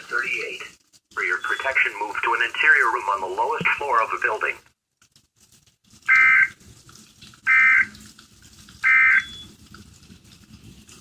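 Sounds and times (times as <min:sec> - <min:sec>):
two-tone digital squawks: 0:06.1 - 0:06.6, 0:07.5 - 0:07.9, 0:08.8 - 0:09.5.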